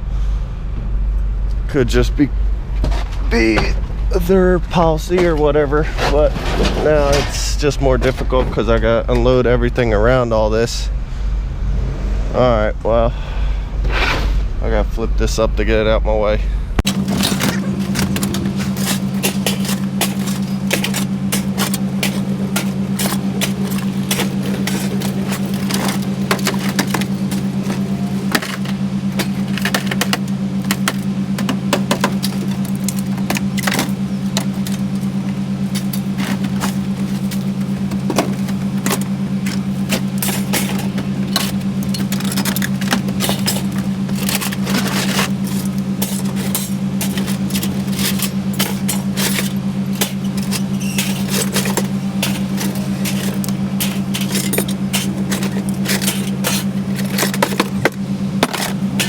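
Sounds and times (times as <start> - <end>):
low engine drone: 0.0 - 59.0
metal scrap clinking and clattering: 6.0 - 7.5, 16.8 - 59.0.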